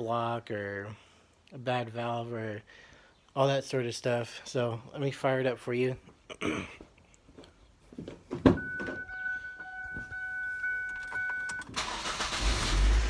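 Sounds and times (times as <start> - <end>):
starter motor cranking: 11.8 - 13.0.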